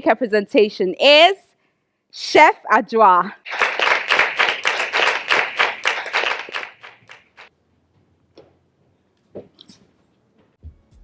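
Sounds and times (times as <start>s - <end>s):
group clapping hands: 3.4s - 7.5s.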